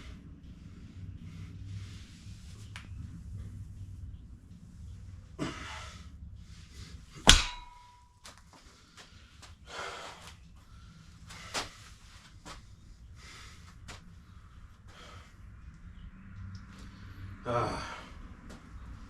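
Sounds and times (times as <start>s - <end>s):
gym weights clanking: 7.2s - 8.0s.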